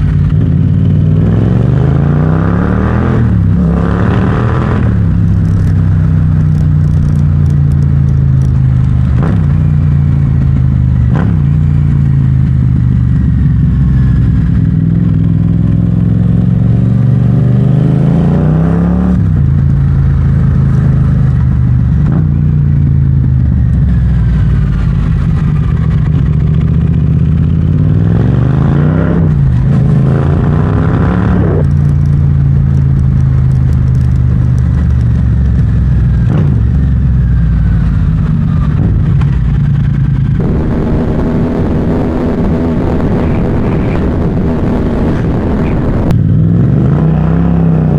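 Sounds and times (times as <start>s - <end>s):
motorcycle engine running: 39.6s - 46.2s.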